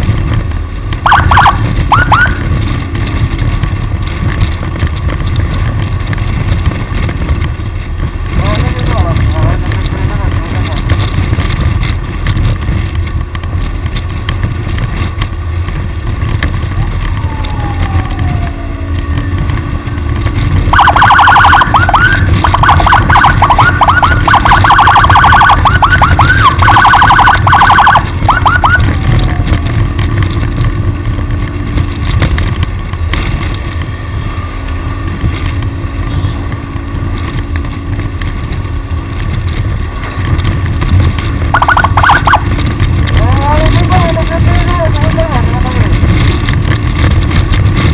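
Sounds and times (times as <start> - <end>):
road noise: 0.0 - 47.9
vehicle engine rumble: 0.0 - 47.9
electronic siren yelping: 1.0 - 2.5, 17.2 - 19.4, 20.7 - 29.6, 41.5 - 42.5.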